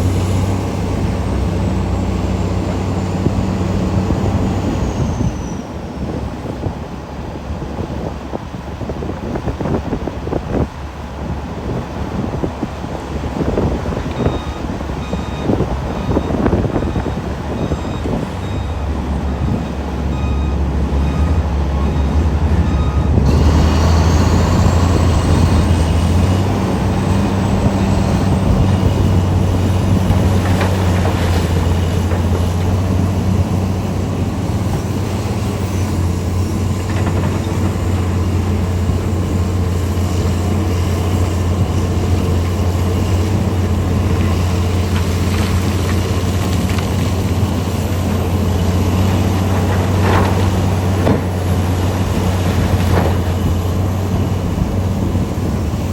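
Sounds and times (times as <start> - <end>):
diesel engines droning: 0.0 - 55.9
reversing alarm beeping: 14.0 - 26.2.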